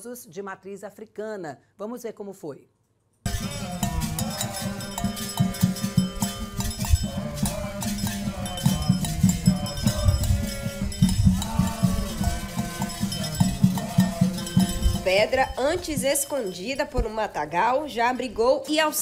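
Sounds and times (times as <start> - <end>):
hand drum strokes: 3.3 - 17.1
bell: 3.3 - 17.2
shaker: 3.3 - 18.8.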